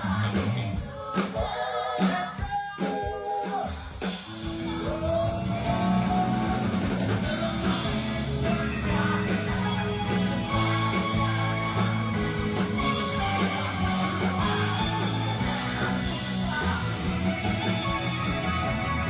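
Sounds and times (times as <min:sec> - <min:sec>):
drum kit: 0:00.0 - 0:19.0
electric guitar: 0:04.3 - 0:19.0.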